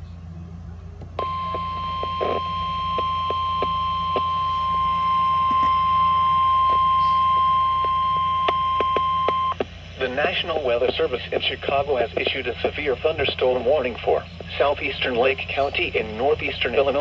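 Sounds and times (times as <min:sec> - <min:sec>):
low hum: 0:00.0 - 0:17.0
radio static clicks: 0:01.0 - 0:17.0
steady high alarm tone: 0:01.2 - 0:10.9, 0:12.4 - 0:17.0.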